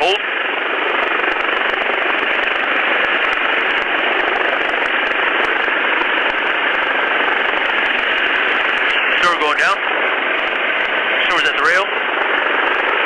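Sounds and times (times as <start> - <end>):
person speaking over radio: 0.0 - 0.2, 8.9 - 9.8, 11.1 - 12.0
radio intercom hiss: 8.4 - 10.1, 11.0 - 12.0.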